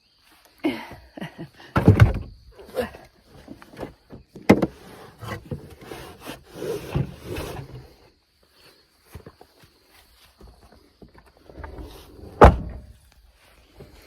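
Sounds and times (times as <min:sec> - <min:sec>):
scraping sounds: 0:04.7 - 0:08.0.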